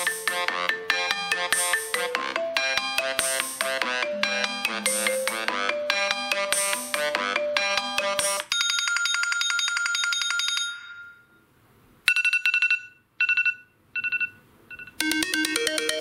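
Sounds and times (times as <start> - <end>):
rapidly repeating electronic tone: 0.0 - 8.5, 15.0 - 16.0
melodic ringtone: 0.0 - 11.4, 12.1 - 16.0.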